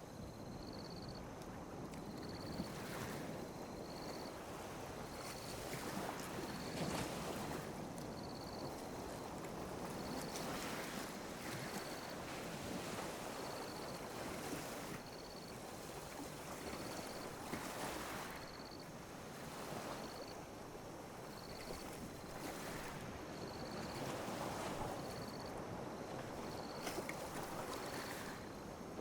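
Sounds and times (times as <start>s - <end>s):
ocean waves lapping: 1.9s - 28.8s.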